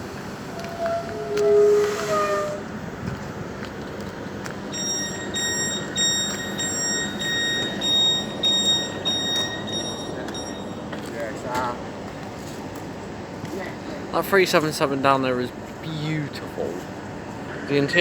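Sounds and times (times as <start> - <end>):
standing train hum: 0.0 - 18.0
train door warning beeps: 0.4 - 2.6, 4.5 - 11.7.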